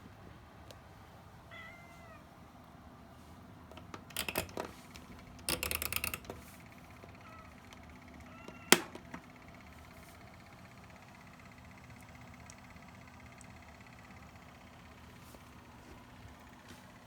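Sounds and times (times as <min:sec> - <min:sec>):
kittens meowing faintly: 0:01.4 - 0:02.4, 0:07.0 - 0:08.9.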